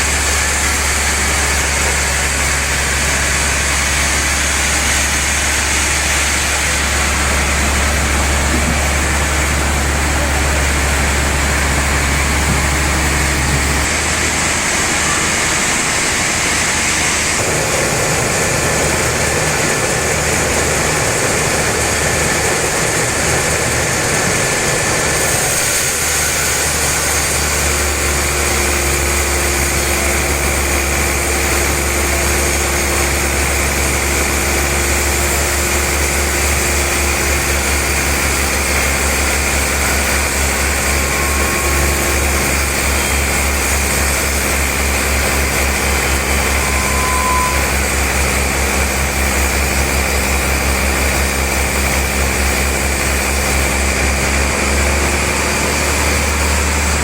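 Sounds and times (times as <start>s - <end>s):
sawmill machinery humming: 0.0s - 57.0s
steady mid-pitched tone: 37.1s - 49.1s.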